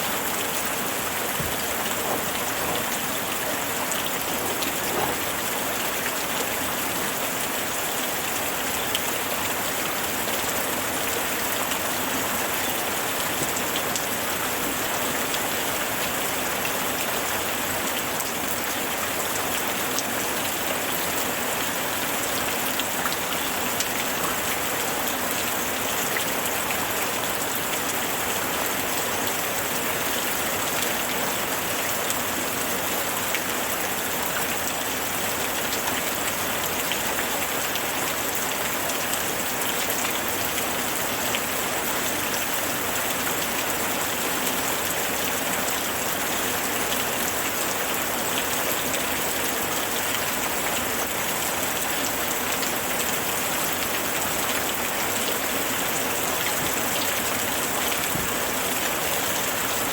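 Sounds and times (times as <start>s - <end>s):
rain hissing: 0.1s - 6.8s.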